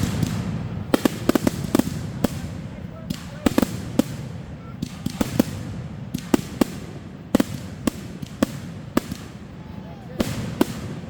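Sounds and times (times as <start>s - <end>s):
fireworks bangs: 0.0s - 11.0s.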